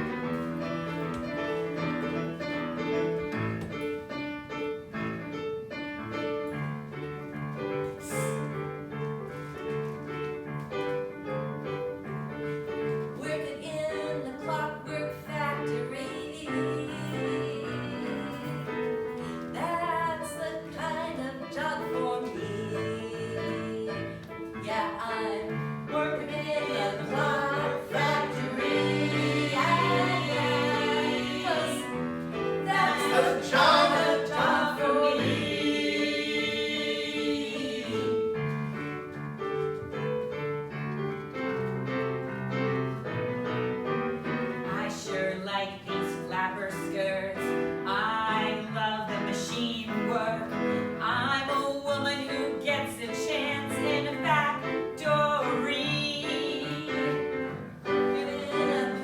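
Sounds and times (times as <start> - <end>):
piano accompaniment: 0.0 - 59.0
voices singing together: 26.0 - 38.4.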